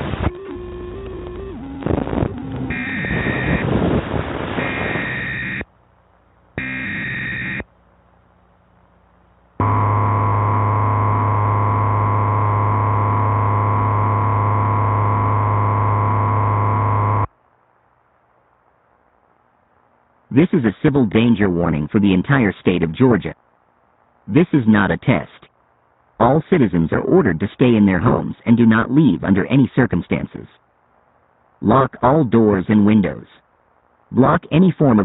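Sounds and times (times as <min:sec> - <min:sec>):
distorted static: 0:00.0 - 0:05.7, 0:06.6 - 0:07.7, 0:09.6 - 0:17.3
buzzy two-tone alarm: 0:00.1 - 0:05.7, 0:06.6 - 0:07.7, 0:09.6 - 0:17.3
screeching data bursts: 0:00.3 - 0:03.7, 0:04.6 - 0:05.6, 0:06.6 - 0:07.6, 0:09.6 - 0:17.3.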